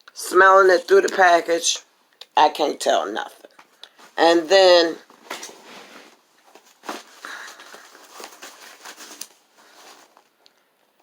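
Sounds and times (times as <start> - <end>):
paper and plastic packaging rustling: 4.8 - 10.4.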